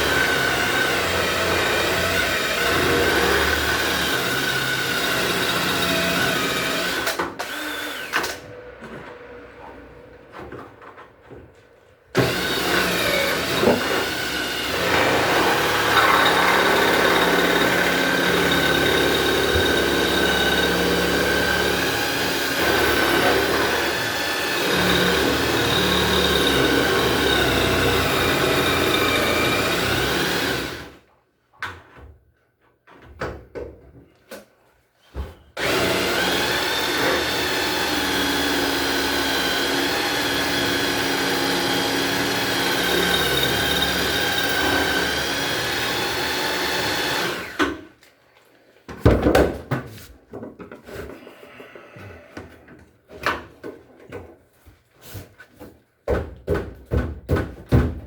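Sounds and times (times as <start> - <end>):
electric drill motor running: 0.0 - 8.4, 12.2 - 30.9, 35.6 - 47.6.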